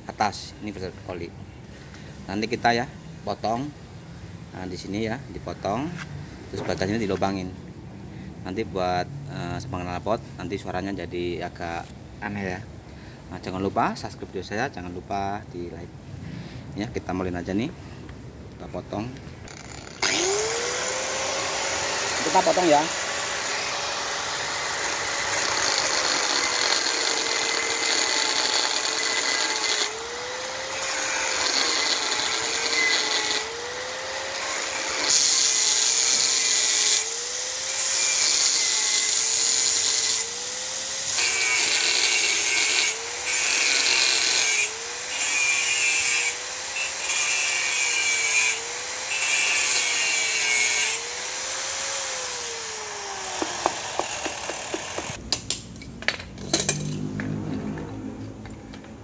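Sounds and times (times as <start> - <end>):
power tool cutting steel: 19.5 - 55.6
harsh hiss from cutting: 20.0 - 55.2.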